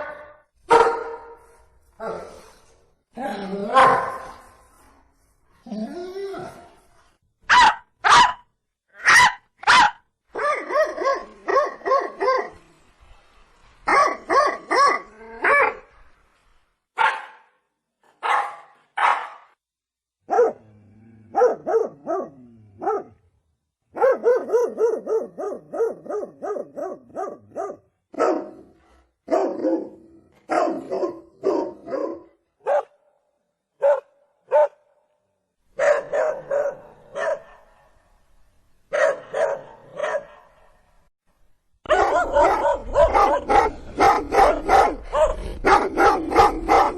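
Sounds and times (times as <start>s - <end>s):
dog barking: 0.0s - 1.4s, 3.7s - 4.4s, 7.5s - 8.4s, 9.0s - 12.6s, 13.9s - 15.8s, 17.0s - 17.6s, 18.2s - 19.5s, 20.3s - 20.6s, 21.3s - 23.2s, 23.9s - 28.7s, 29.3s - 33.0s, 33.8s - 34.9s, 35.8s - 38.0s, 38.9s - 40.7s, 41.9s - 46.9s.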